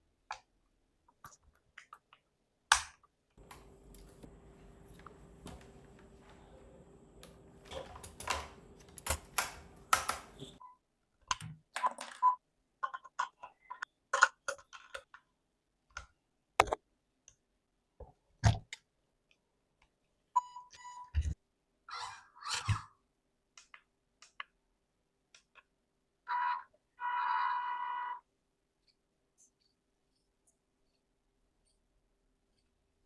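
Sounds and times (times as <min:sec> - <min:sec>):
faint steady hum: 0:03.4 - 0:10.6.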